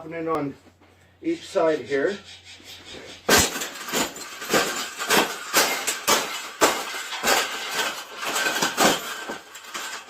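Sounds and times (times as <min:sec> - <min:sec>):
cage rattling and clanking: 0:02.8 - 0:10.0.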